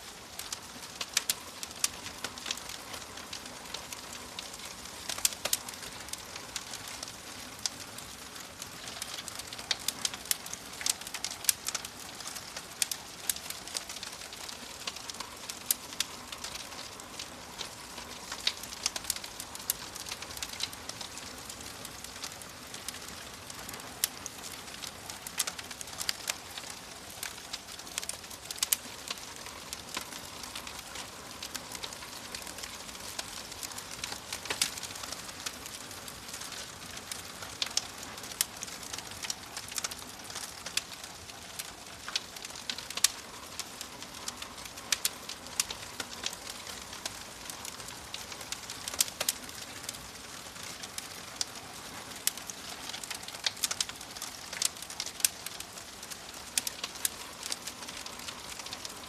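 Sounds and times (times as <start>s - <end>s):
wood fire crackling: 0.0s - 59.0s.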